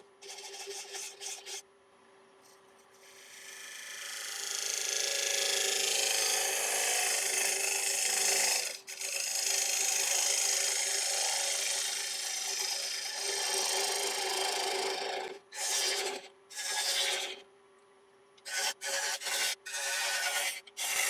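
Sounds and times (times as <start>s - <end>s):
gouge scraping wood on lathe: 0.2s - 1.6s, 3.6s - 17.4s.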